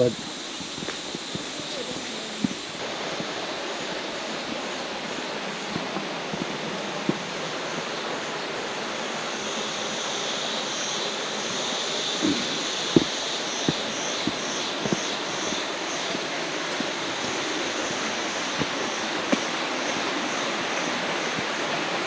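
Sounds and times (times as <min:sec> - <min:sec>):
steady rushing outdoor noise: 0:00.0 - 0:22.0
high pulsing buzz: 0:08.0 - 0:19.5.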